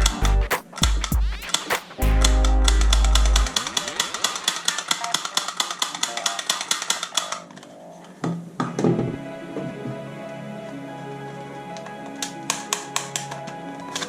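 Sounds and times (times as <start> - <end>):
heavy hum: 0.0 - 4.7.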